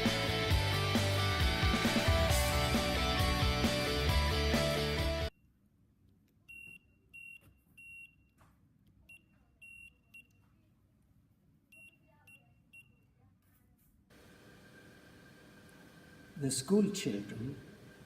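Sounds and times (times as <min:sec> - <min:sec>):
morse code buzzer beeps: 0:06.5 - 0:08.3.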